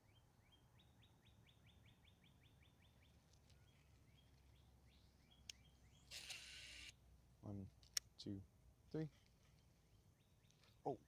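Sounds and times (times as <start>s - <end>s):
faint bird song trill: 0.0s - 6.2s, 9.7s - 11.0s.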